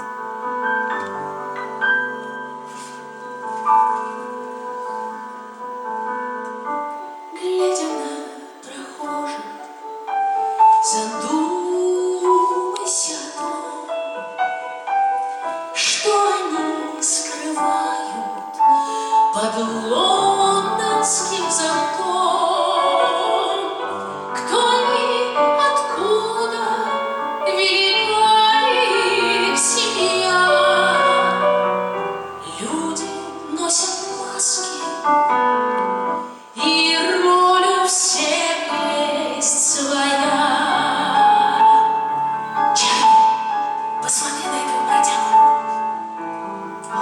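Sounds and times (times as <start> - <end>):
instrumental accompaniment: 0.0 - 47.0
woman singing opera: 7.3 - 9.7, 10.7 - 14.2, 15.8 - 35.1, 36.6 - 46.0, 46.6 - 47.0.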